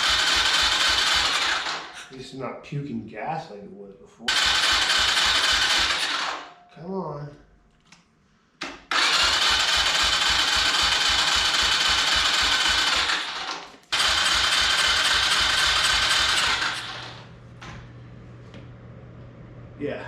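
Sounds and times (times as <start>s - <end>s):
engine cranking without starting: 0.0s - 2.1s, 4.3s - 6.5s, 8.8s - 17.3s.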